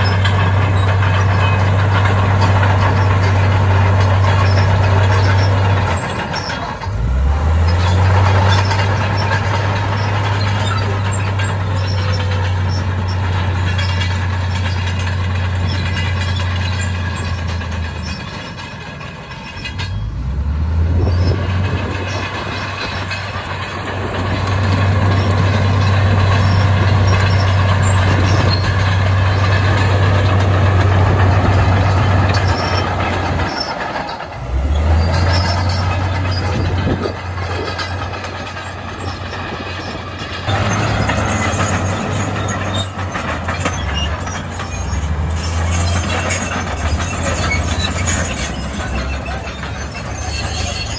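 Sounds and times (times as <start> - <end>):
diesel machinery engine drone: 0.0 - 50.9.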